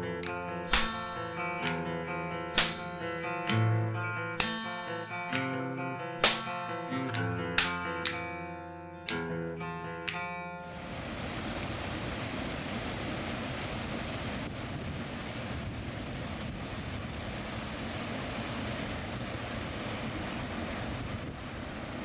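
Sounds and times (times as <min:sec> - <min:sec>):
rushing water: 0:00.2 - 0:01.8, 0:02.6 - 0:03.0, 0:06.2 - 0:06.5, 0:10.6 - 0:22.0.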